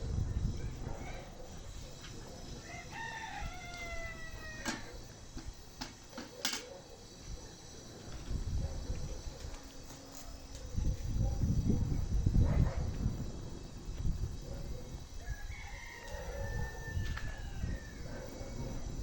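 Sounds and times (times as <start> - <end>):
rooster crowing: 2.5 - 5.1, 15.1 - 18.7.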